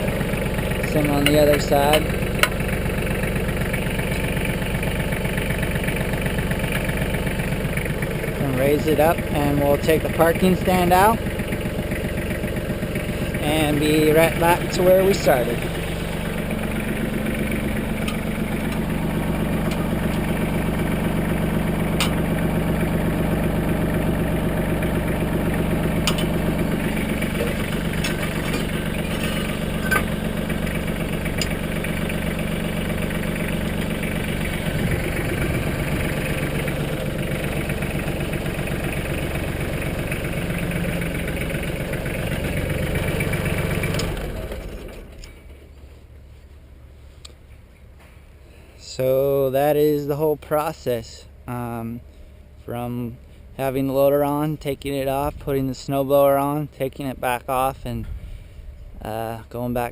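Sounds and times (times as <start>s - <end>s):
tractor diesel engine running: 0.0s - 59.9s.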